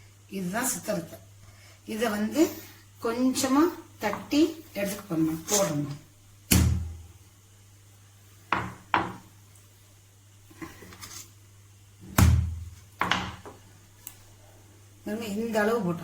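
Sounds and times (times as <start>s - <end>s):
root being pounded: 6.5s - 7.0s, 12.0s - 13.4s.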